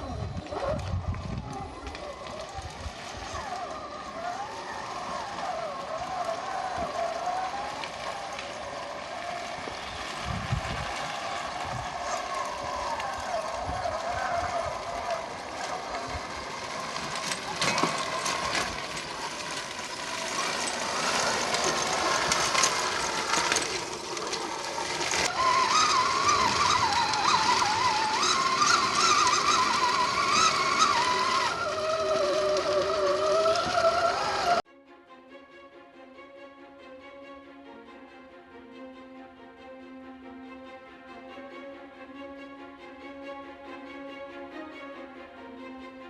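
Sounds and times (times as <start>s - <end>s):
electric motor whining: 0.0s - 34.6s.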